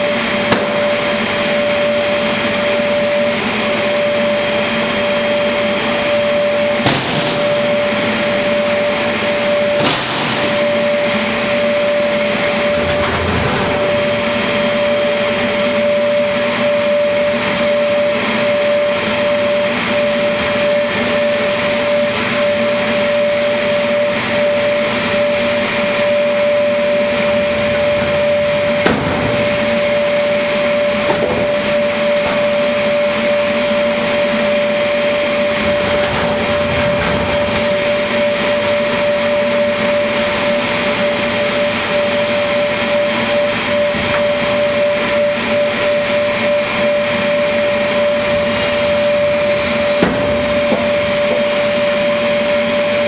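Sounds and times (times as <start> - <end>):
cutting machine whining: 0.0 - 53.0
sharp knock: 6.8 - 7.5, 50.0 - 50.8.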